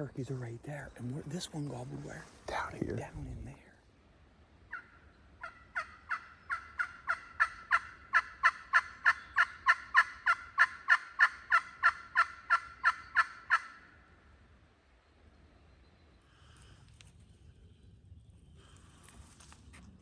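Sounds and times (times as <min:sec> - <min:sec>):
turkey yelps: 0:04.7 - 0:13.9.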